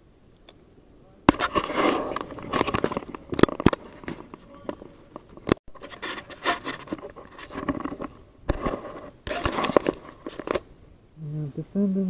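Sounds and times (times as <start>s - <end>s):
rubbing and scraping: 1.3s - 10.7s.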